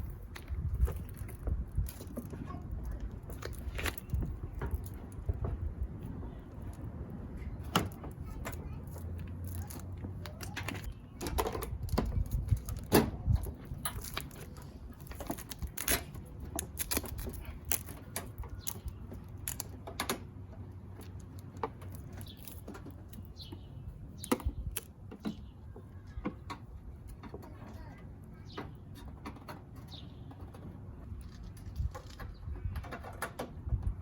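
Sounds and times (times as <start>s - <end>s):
plastic and metal parts clicking: 7.7s - 20.3s.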